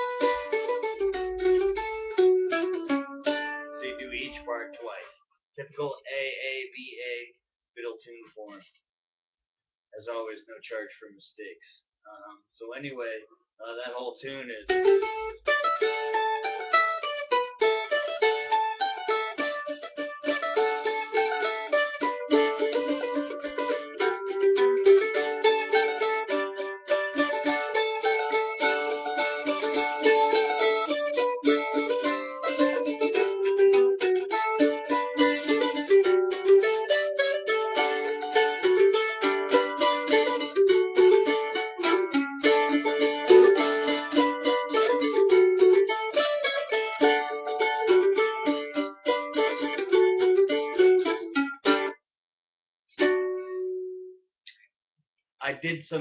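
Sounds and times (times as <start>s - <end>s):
solo mandolin playing: 0.0s - 5.0s, 14.4s - 52.0s, 53.0s - 54.2s.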